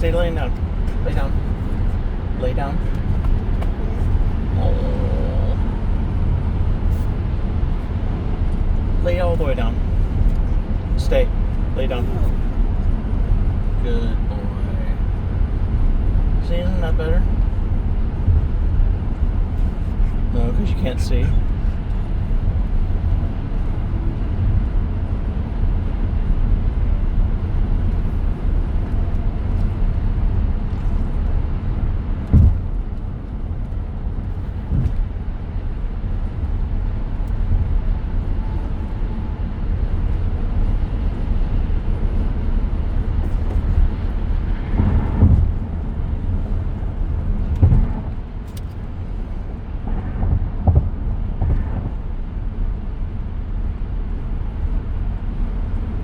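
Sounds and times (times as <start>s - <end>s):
road and tyre rumble in car cabin: 0.0s - 56.0s
short thumps: 32.3s - 32.8s, 34.6s - 35.1s, 47.6s - 48.2s.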